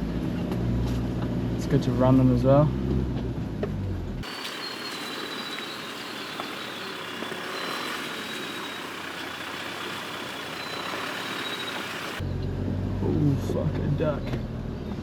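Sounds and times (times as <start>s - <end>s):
vehicle engine and tyre noise: 0.0s - 15.0s
faint high whine: 4.2s - 12.2s.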